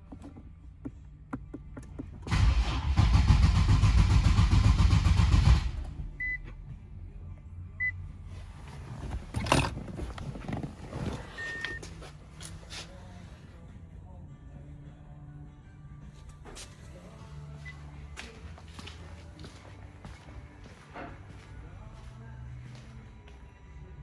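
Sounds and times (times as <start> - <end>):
starter motor cranking: 2.2 - 5.8
short electronic beeps: 11.3 - 11.9.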